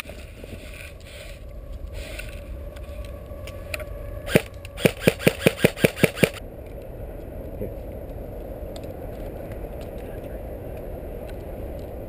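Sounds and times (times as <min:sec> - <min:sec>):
low rumble: 0:00.0 - 0:12.0
airsoft gun shots: 0:04.3 - 0:06.4.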